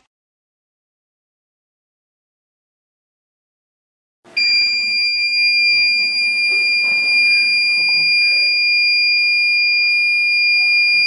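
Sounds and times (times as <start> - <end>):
buzzer high-pitched alarm tone: 4.4 - 11.0.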